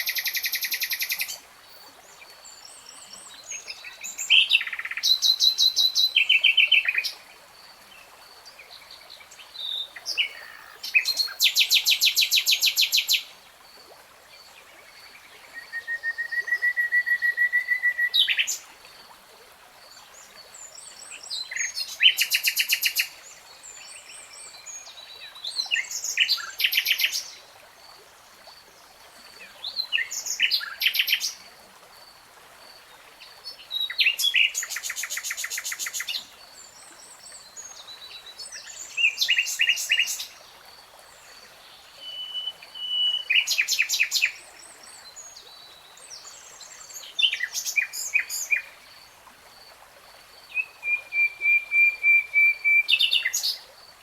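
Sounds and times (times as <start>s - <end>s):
nightingale singing: 42.0s - 44.4s, 50.5s - 53.6s.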